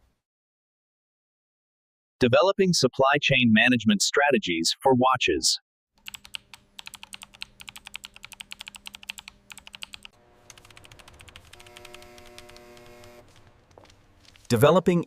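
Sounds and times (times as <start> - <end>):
computer keyboard typing: 6.0 - 13.4
steady hum of held tones: 7.2 - 13.3.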